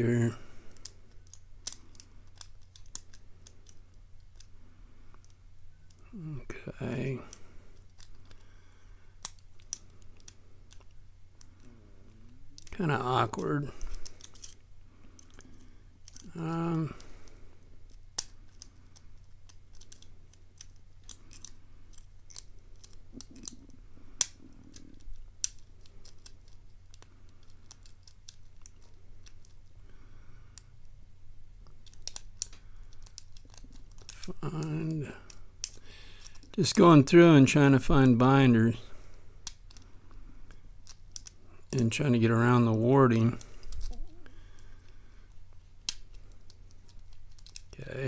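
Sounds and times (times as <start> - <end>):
lock pick clicking and scraping: 0.8 - 4.5, 13.8 - 16.3, 17.9 - 29.7, 31.6 - 36.8, 39.4 - 39.9, 40.5 - 41.4, 45.8 - 47.8.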